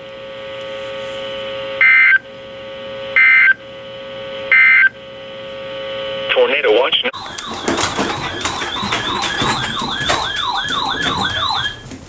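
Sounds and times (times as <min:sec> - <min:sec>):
radio hum and hiss: 0:06.2 - 0:07.2
shrill digital screeches: 0:07.2 - 0:11.9.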